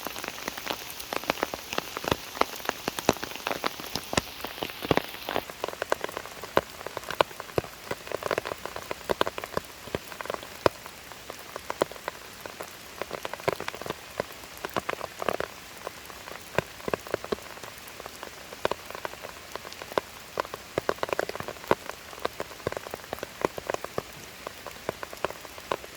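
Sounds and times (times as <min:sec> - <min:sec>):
rain falling: 0:00.0 - 0:25.9
raindrops pattering close by: 0:00.0 - 0:25.9.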